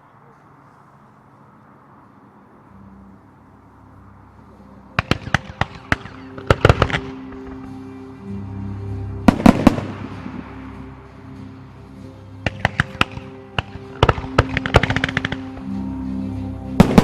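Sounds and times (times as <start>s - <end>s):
music with held notes: 2.6s - 17.0s
fireworks cracking: 5.0s - 7.9s, 9.2s - 11.6s, 12.4s - 15.9s, 16.8s - 17.0s.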